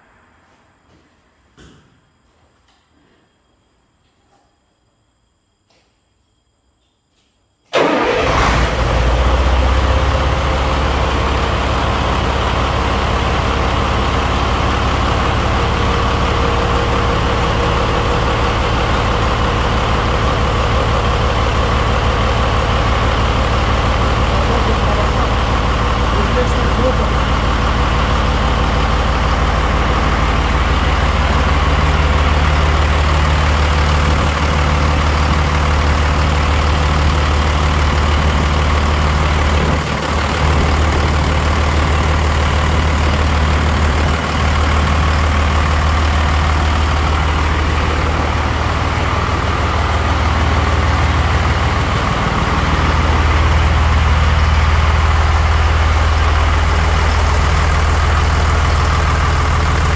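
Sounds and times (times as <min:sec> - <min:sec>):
diesel truck engine idling: 0:07.7 - 0:59.9.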